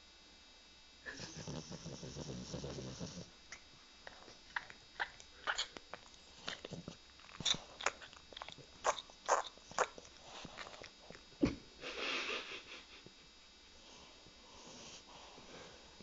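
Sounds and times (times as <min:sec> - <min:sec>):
dog mouth smacks and clicks: 0:03.5 - 0:11.2.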